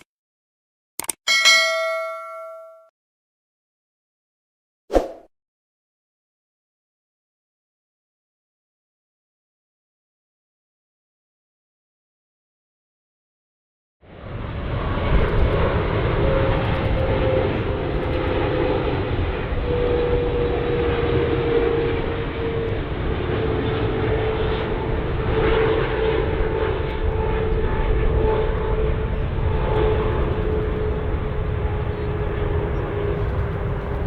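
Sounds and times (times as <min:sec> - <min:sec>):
jet engine noise: 0:14.1 - 0:34.0
engine whine dropping in pitch: 0:14.2 - 0:34.0
faint higher whine: 0:16.2 - 0:34.0.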